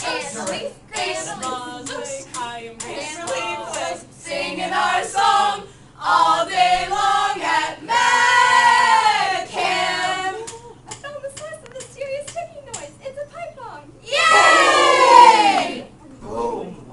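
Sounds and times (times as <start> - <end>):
young voices singing a cappella: 0.0 - 10.6.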